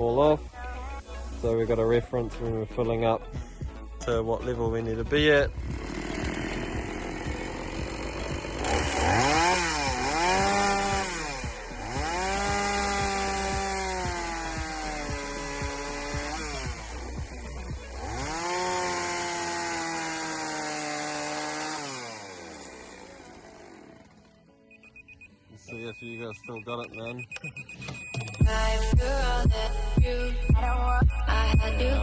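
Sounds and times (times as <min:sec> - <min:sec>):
chainsaw cutting wood: 0:05.0 - 0:24.5.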